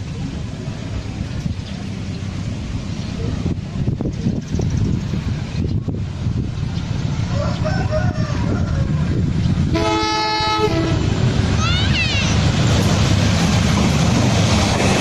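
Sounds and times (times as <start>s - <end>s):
train rumbling on rails: 0.0s - 15.0s
locomotive horn blast: 9.7s - 11.3s.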